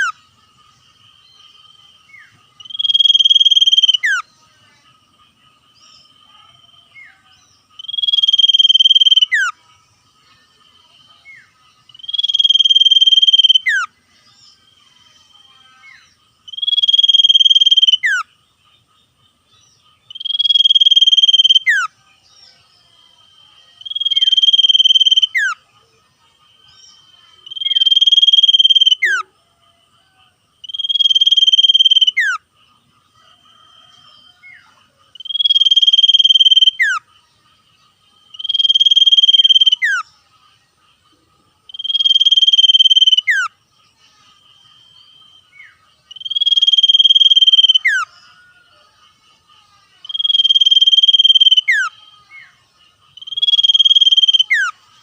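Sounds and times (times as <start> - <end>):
bird buzzy trill: 2.2 - 4.3, 7.8 - 9.6, 11.4 - 14.0, 15.5 - 18.3, 20.1 - 22.0, 23.8 - 25.6, 27.4 - 29.3, 30.6 - 32.5, 33.4 - 37.1, 38.3 - 40.2, 41.6 - 48.7, 50.0 - 54.9.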